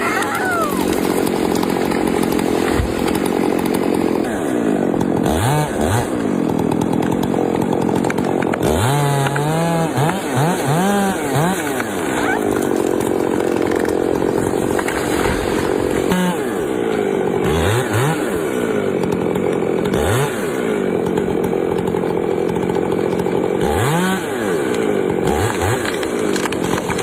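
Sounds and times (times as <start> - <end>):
chainsaw revving: 0.0 - 27.0.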